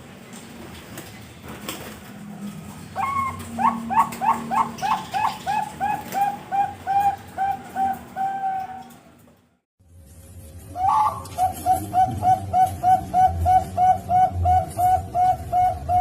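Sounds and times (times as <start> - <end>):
dove cooing: 2.9 - 9.1, 10.8 - 16.0.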